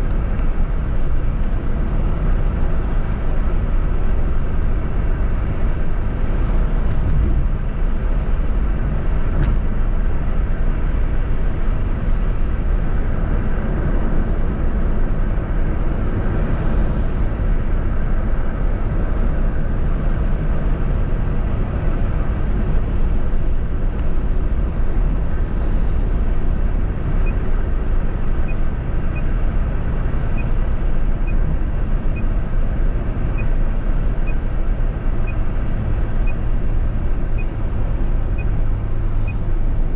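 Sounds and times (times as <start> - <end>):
car driving on highway: 0.0 - 39.9.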